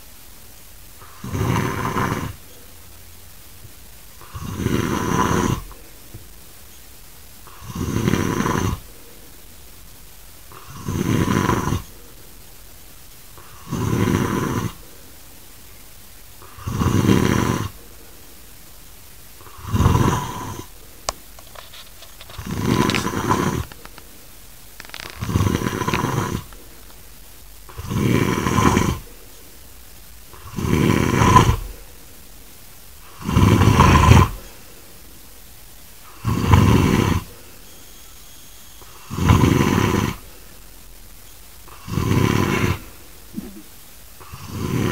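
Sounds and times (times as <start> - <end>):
man snoring heavily: 1.0 - 2.4, 4.2 - 5.8, 7.5 - 8.8, 10.5 - 11.9, 13.4 - 14.8, 16.4 - 17.8, 19.4 - 20.7, 22.4 - 23.7, 25.2 - 26.5, 27.7 - 29.1, 30.3 - 31.7, 33.0 - 34.4, 36.1 - 37.3, 38.9 - 40.2, 41.7 - 43.5, 44.2 - 44.9.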